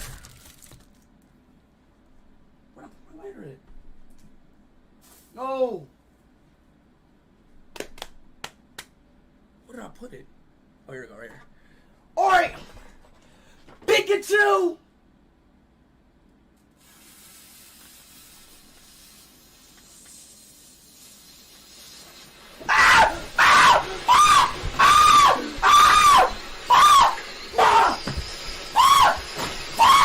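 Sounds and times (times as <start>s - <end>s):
faint hissing: 16.7s - 24.1s
person screaming: 22.7s - 30.0s.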